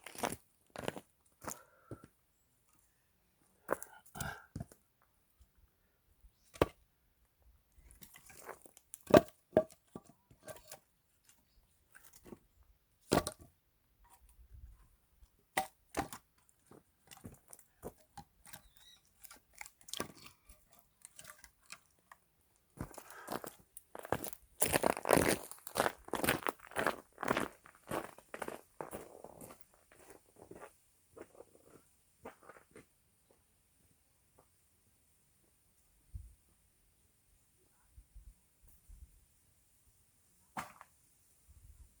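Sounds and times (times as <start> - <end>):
axe striking wood: 9.0 - 9.8.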